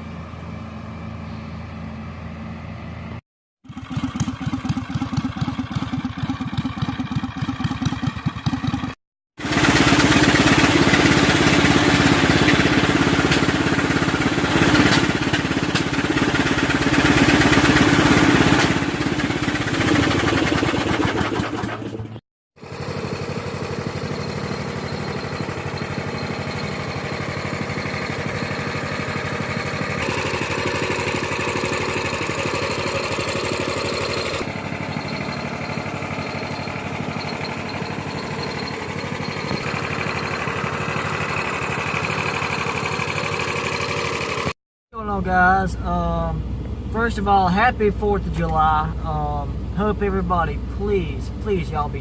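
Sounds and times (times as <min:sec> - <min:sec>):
small engine running: 0:03.6 - 0:44.6.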